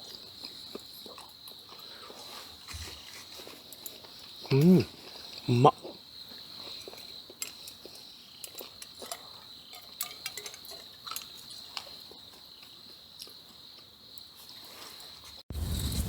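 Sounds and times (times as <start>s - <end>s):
insects chirping drone: 0.0s - 16.0s
small clicks and ticks: 6.7s - 12.5s.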